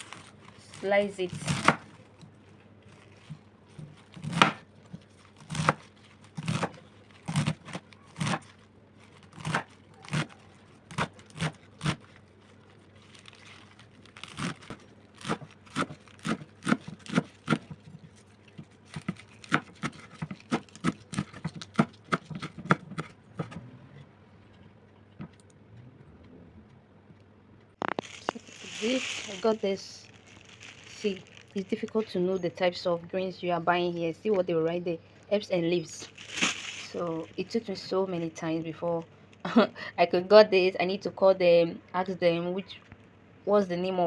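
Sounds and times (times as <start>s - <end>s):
knife chopping on cutting board: 19.0s - 23.6s.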